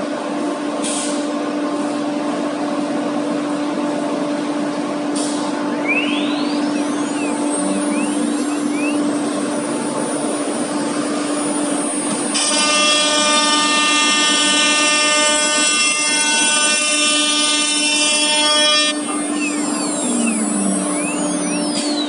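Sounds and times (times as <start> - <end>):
loud whine with overtones: 4.7 - 22.0.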